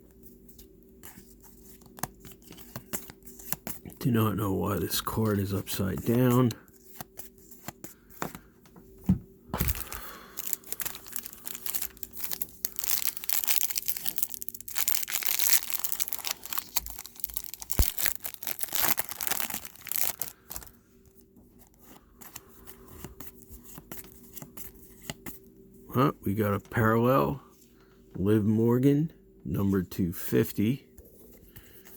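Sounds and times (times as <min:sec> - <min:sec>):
cards being handled: 0:00.5 - 0:04.0, 0:05.2 - 0:08.5, 0:09.6 - 0:25.4
wrappers tearing and crinkling: 0:09.6 - 0:20.8.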